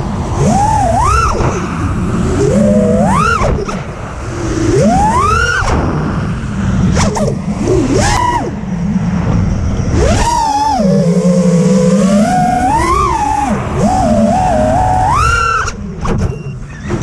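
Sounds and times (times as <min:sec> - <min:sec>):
quadcopter motors whining: 0:00.0 - 0:17.0
steady low rumble: 0:00.0 - 0:17.0.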